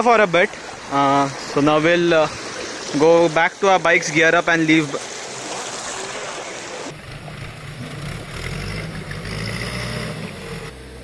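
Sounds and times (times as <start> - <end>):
rushing stream water: 0.0 - 11.0
motorcycle engine at low revs: 6.9 - 11.0.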